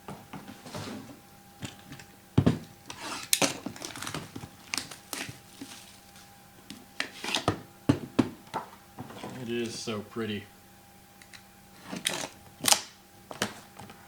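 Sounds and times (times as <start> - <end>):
boxes knocking when set down: 0.0 - 6.1, 7.2 - 9.5
shrink wrap crinkling and tearing: 2.9 - 6.3.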